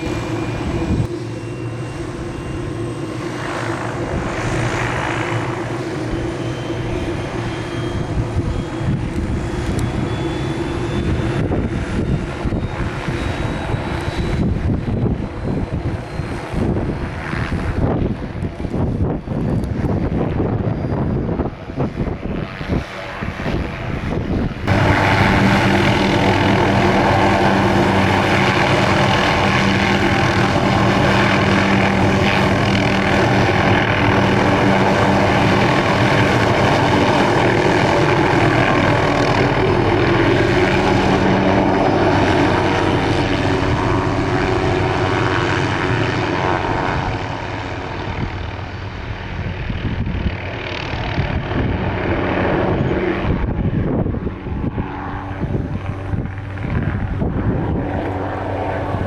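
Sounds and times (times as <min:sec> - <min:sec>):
helicopter running: 0:00.0 - 0:59.0
wind: 0:00.0 - 0:59.0.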